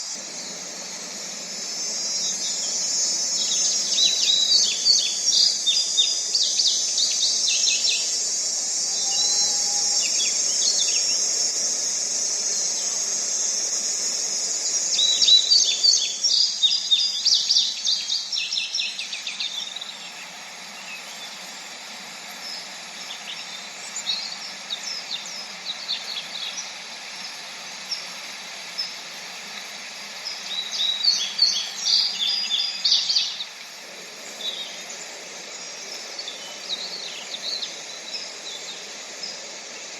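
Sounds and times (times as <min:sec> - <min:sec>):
birds chirping: 0:00.0 - 0:18.3, 0:30.3 - 0:39.9
steady high-pitched hiss: 0:00.0 - 0:39.9.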